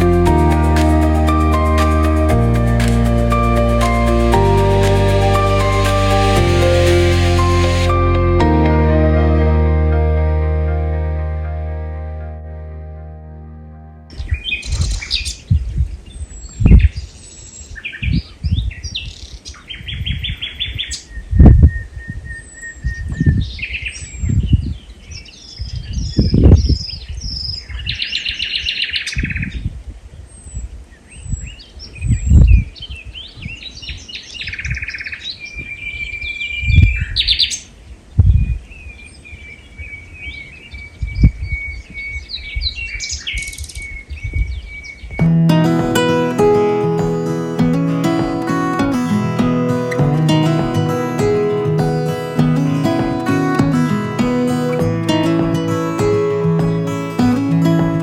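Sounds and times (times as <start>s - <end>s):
songbirds singing: 30.3s - 45.3s
low thumps: 45.2s - 58.0s.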